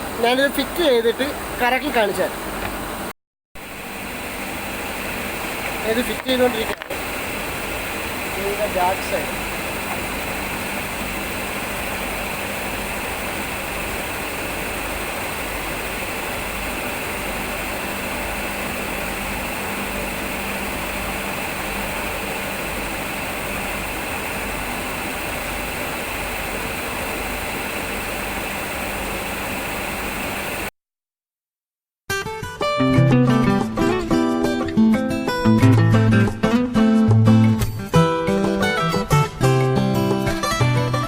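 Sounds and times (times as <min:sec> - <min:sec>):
low hum: 0:03.6 - 0:30.7
steady hiss: 0:03.7 - 0:30.7.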